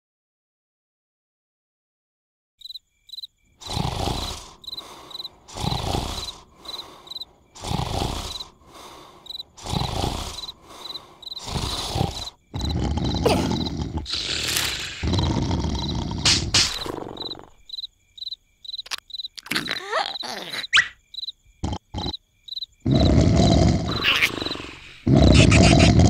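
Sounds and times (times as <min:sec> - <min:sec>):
crickets chirping: 0:02.6 - 0:26.0
cartoon snoring: 0:03.6 - 0:17.7, 0:18.9 - 0:21.0, 0:21.6 - 0:22.2, 0:22.8 - 0:26.0.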